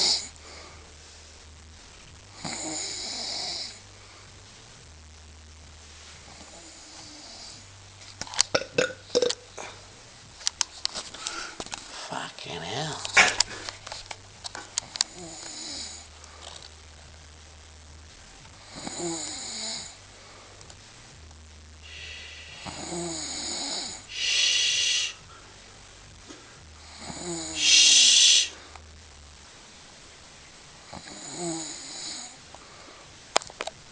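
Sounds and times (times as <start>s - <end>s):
woman snoring: 0.0s - 0.6s, 2.3s - 3.8s, 6.3s - 7.7s, 15.0s - 16.1s, 18.6s - 20.0s, 21.8s - 25.2s, 26.8s - 28.6s, 30.8s - 32.4s.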